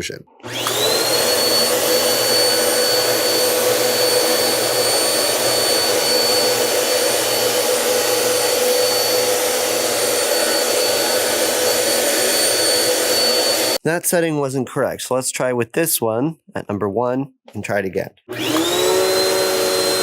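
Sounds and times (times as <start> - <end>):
upright vacuum cleaner running: 0.4 - 13.8, 18.3 - 20.0.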